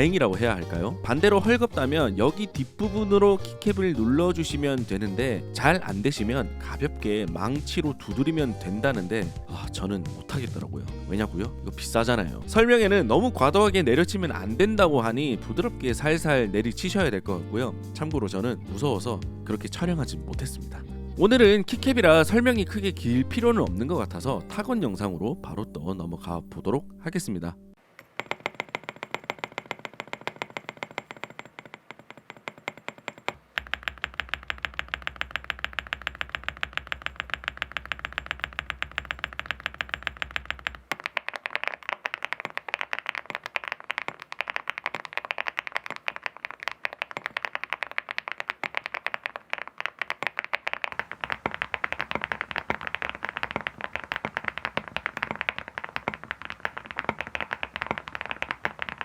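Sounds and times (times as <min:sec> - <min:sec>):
fast typing on mechanical keyboard: 0:28.2 - 0:59.0.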